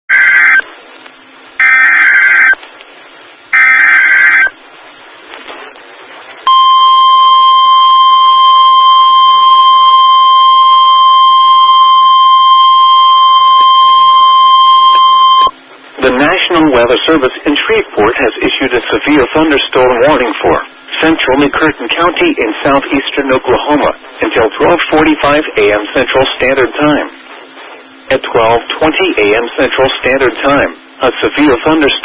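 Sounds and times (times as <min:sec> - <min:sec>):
steady alarm tone: 0:00.1 - 0:00.6, 0:01.6 - 0:02.6, 0:03.5 - 0:04.6, 0:06.5 - 0:15.5
digital data bursts: 0:03.5 - 0:04.5.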